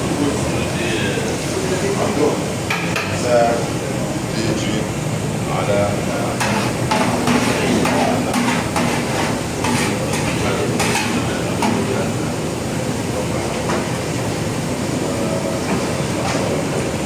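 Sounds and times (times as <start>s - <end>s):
metal pots and utensils clinking: 6.4s - 12.0s.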